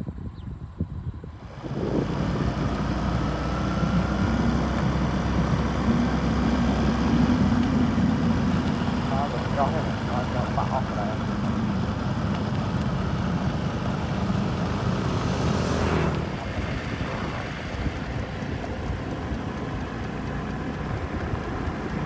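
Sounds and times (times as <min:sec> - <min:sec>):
motor vehicle running: 0:01.3 - 0:22.0
vehicle passing rushing swell: 0:13.0 - 0:18.5.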